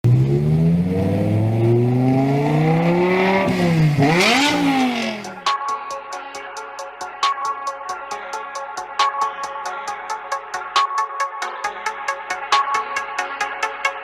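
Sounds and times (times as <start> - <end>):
car engine revving: 0.0 - 5.5
electronic music with steady beat: 2.4 - 14.0.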